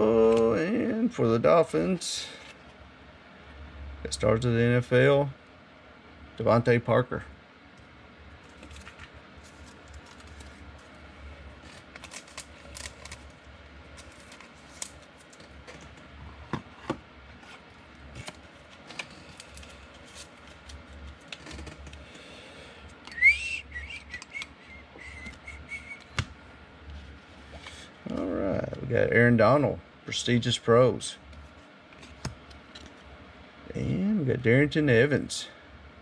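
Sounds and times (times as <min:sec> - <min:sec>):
rising whistle: 0:23.1 - 0:26.2.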